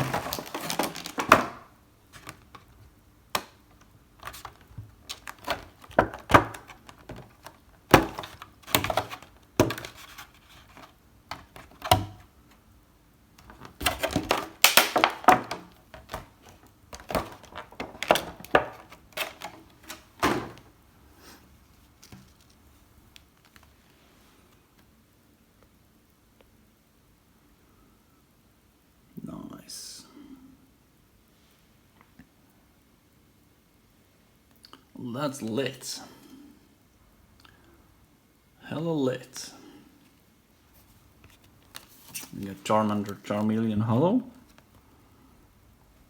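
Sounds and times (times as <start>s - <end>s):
packaging rustling: 0.0s - 12.6s, 13.4s - 20.8s, 21.6s - 24.0s, 40.8s - 43.4s
plastic and cardboard packaging crinkling: 0.0s - 12.6s, 13.4s - 20.8s, 21.6s - 24.0s, 40.7s - 44.7s.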